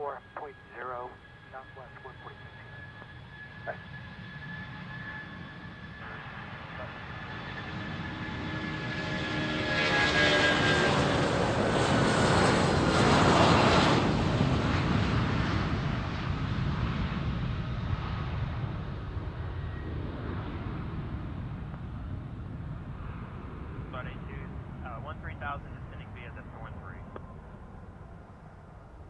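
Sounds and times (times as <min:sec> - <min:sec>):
jet aircraft passing: 0:00.0 - 0:29.0.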